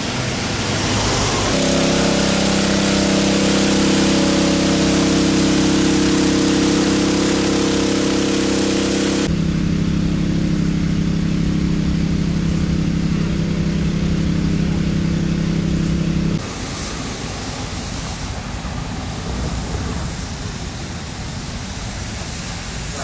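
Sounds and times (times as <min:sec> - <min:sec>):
steady rushing noise: 0:00.0 - 0:09.4, 0:15.6 - 0:23.0
engine humming: 0:00.0 - 0:23.0.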